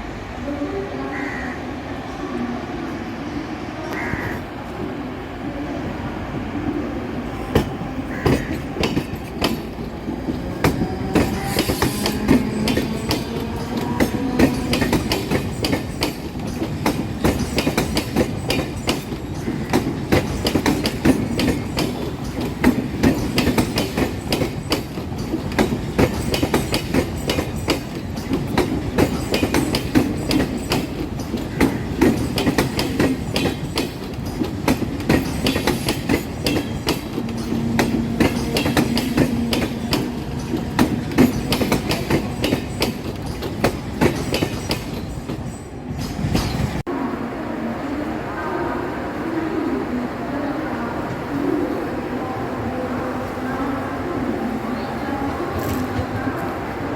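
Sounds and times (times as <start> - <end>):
train wheels clicking over rail joints: 7.5 - 46.8.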